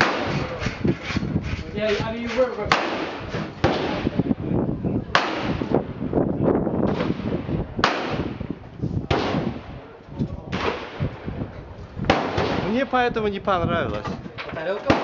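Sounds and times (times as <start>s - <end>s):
shotgun blasts with echo: 0.0s - 1.2s, 2.3s - 4.3s, 5.1s - 5.9s, 6.8s - 8.5s, 9.1s - 9.8s, 10.5s - 11.4s, 12.0s - 12.8s.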